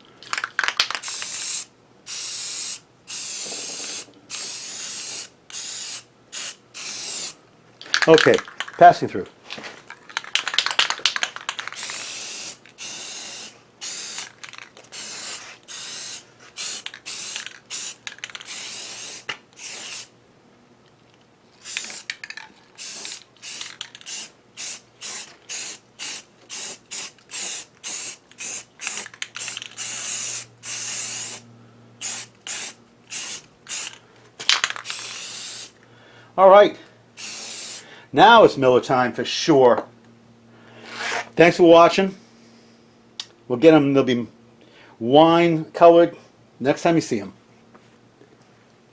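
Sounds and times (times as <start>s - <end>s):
spray can hissing bursts: 0.9s - 7.4s, 11.7s - 20.1s, 21.6s - 22.1s, 22.8s - 31.4s, 32.0s - 34.0s, 34.8s - 35.7s, 37.2s - 37.8s.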